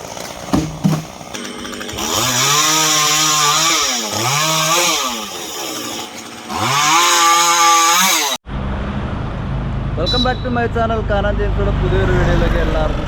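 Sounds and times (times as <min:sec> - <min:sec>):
chainsaw revving: 0:00.0 - 0:08.4.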